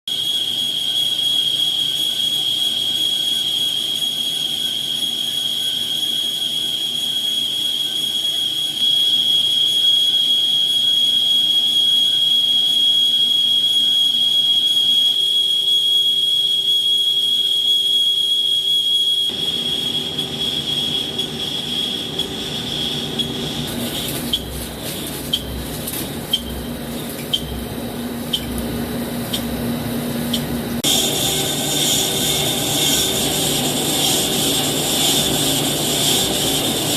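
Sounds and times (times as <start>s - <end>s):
lathe whining: 19.3s - 36.9s
rough cutting noise: 30.8s - 36.9s.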